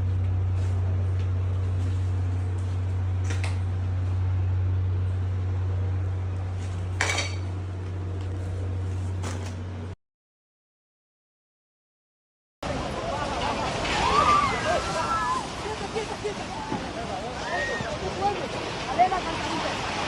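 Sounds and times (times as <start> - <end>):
steady low hum: 0.0 - 10.0
dishes clinking: 7.0 - 7.6.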